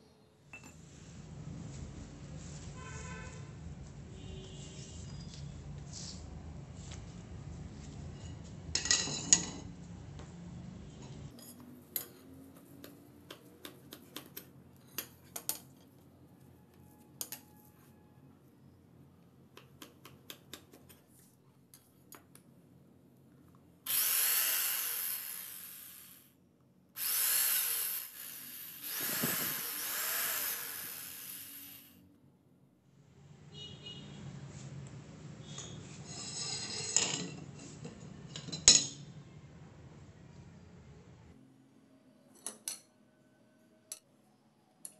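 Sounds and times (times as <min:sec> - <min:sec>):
power tool running: 0:23.9 - 0:26.3, 0:27.0 - 0:32.0.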